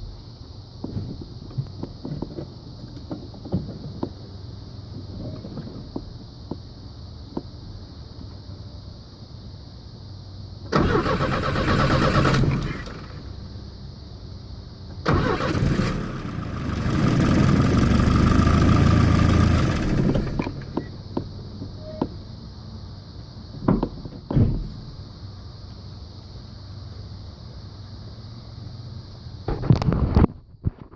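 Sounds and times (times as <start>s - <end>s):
starter motor cranking engine: 10.7s - 13.3s, 15.0s - 20.9s.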